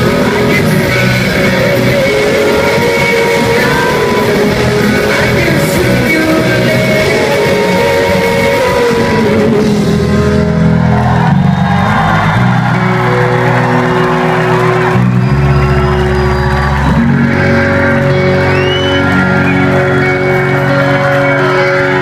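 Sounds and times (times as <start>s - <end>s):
rock band playing live: 0.0s - 22.0s.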